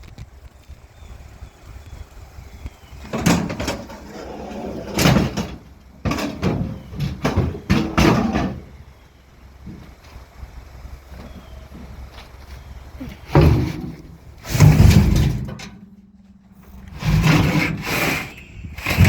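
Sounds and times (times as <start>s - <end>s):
metal bicycles clanking: 3.0s - 8.8s, 13.0s - 19.0s.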